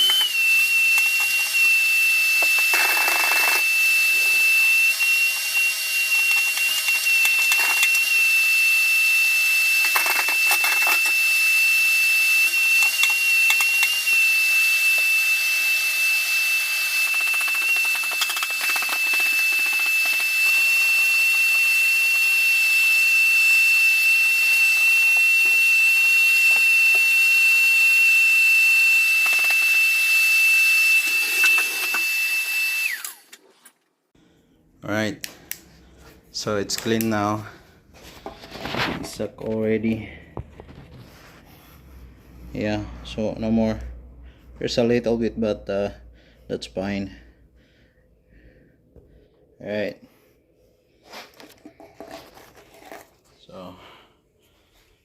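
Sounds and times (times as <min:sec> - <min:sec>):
vacuum cleaner motor whining: 0:00.0 - 0:33.4.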